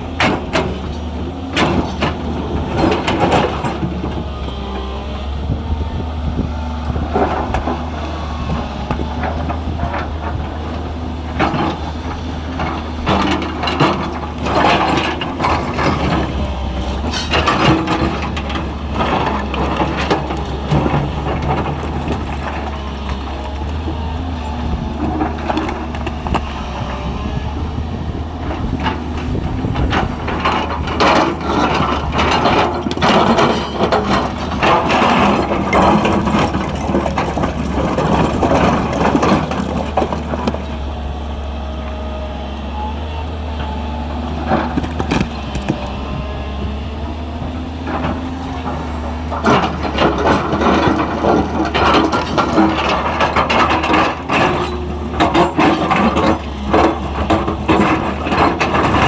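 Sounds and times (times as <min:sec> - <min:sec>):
excavator diesel engine running: 0:00.0 - 0:59.0
rocks knocking and scraping: 0:28.6 - 0:40.9, 0:44.3 - 0:59.0.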